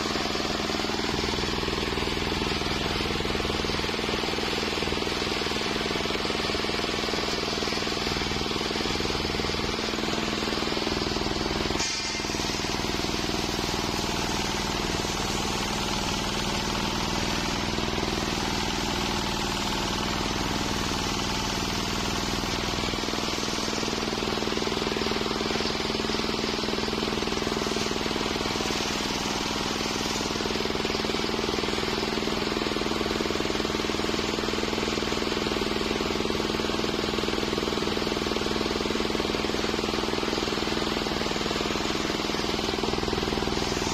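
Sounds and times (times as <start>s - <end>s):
circular sawmill running: 0.0s - 43.9s
steady hum: 41.4s - 43.9s.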